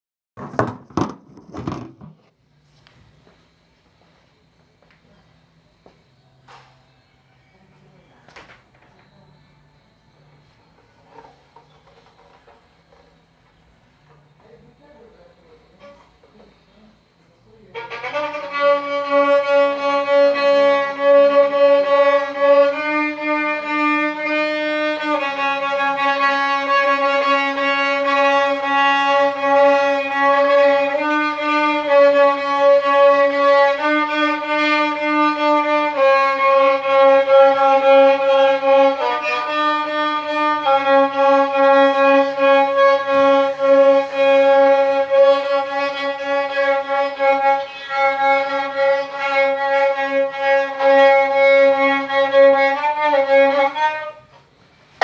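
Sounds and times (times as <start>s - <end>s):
violin playing long notes: 17.7s - 54.3s.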